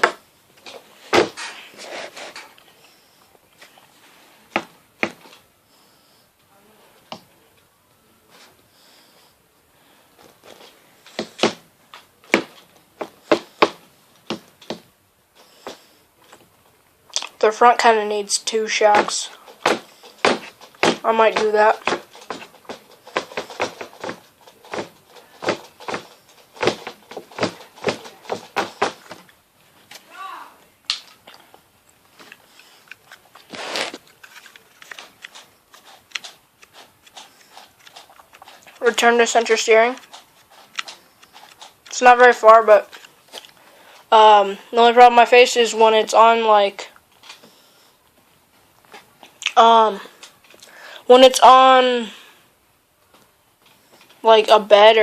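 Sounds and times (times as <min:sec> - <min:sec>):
noisy rustle: 0:00.6 - 0:04.5, 0:32.1 - 0:44.2.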